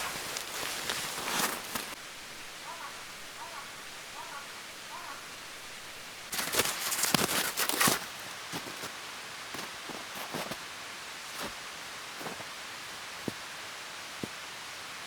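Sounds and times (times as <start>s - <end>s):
wood fire crackling: 0.0s - 2.0s
faint steady hiss: 0.0s - 15.0s.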